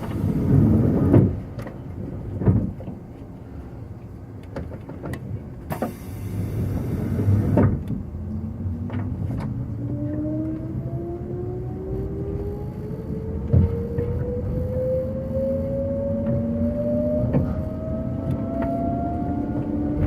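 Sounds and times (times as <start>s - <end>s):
air hiss: 5.7s - 7.6s
traction motor whine: 9.6s - 20.0s.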